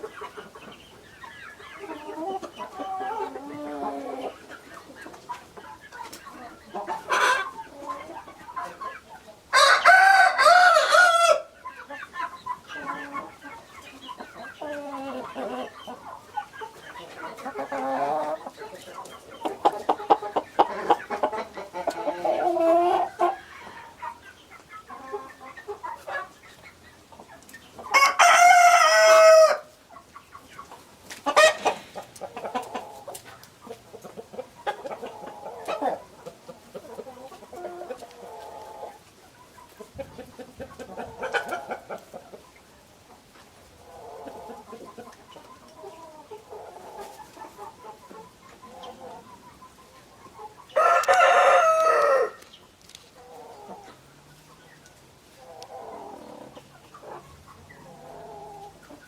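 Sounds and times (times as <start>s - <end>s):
chickens clucking: 0.0s - 59.0s
rooster crowing: 9.5s - 11.5s, 28.0s - 29.7s, 50.8s - 52.4s.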